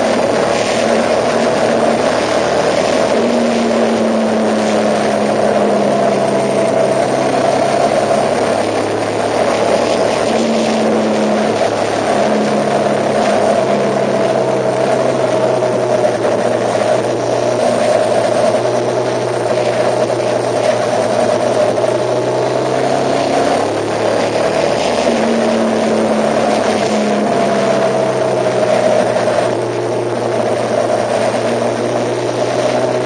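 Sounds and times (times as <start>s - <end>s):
vehicle engine drone: 0.0s - 33.0s
whine drifting in pitch: 0.0s - 33.0s.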